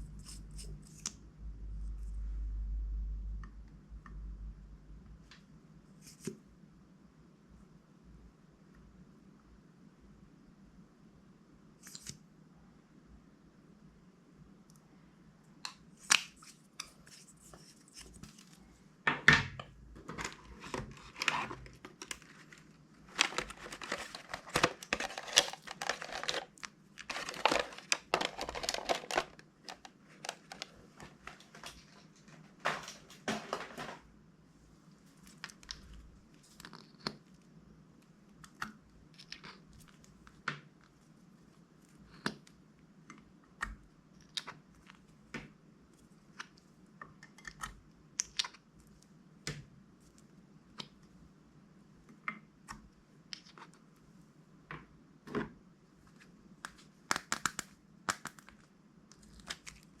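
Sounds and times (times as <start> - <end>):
plastic bags crinkling: 20.2 - 34.0.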